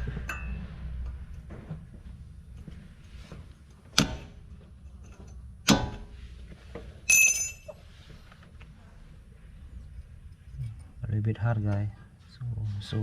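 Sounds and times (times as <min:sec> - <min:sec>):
ringing metal clang: 0:00.3 - 0:00.7, 0:07.1 - 0:07.8.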